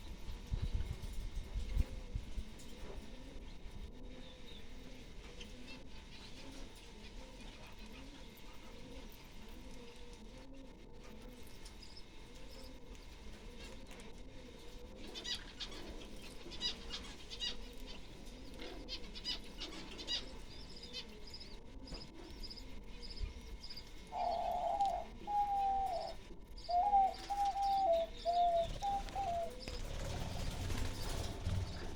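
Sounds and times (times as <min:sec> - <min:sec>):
birds chirping: 0:11.0 - 0:31.9
bird calling descending notes: 0:24.1 - 0:31.9.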